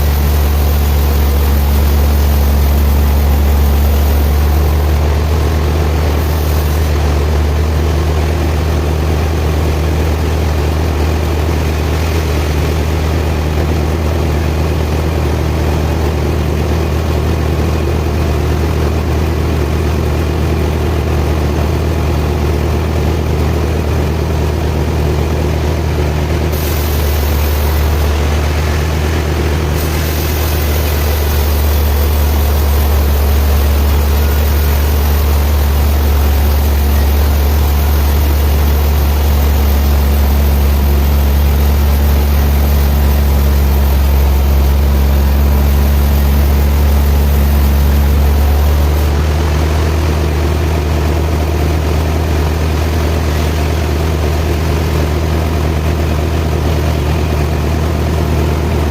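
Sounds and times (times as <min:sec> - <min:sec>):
high hiss: 0:00.0 - 0:07.1, 0:26.4 - 0:49.5
sawmill machinery humming: 0:00.0 - 0:58.9.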